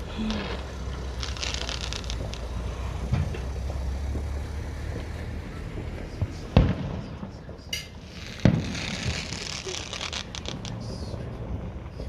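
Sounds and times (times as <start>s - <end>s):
fireworks crackling: 0.0s - 12.0s
steady low rumble: 0.0s - 12.0s.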